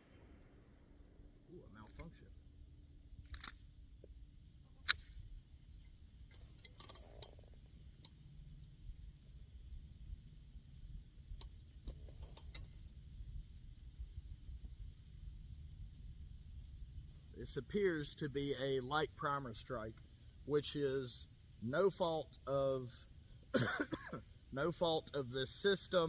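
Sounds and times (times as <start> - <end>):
light clicks and rattles: 1.8 - 2.3, 3.2 - 4.1, 6.2 - 8.2, 11.3 - 13.0.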